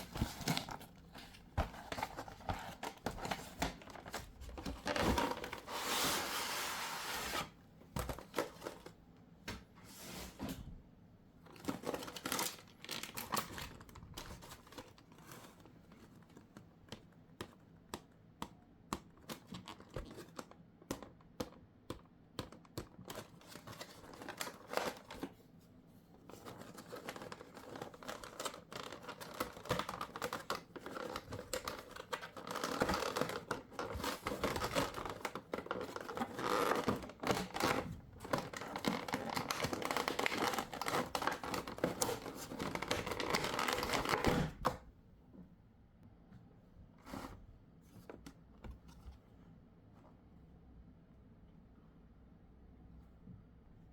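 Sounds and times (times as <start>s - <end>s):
packaging tearing and crinkling: 11.6s - 13.9s, 26.7s - 44.2s.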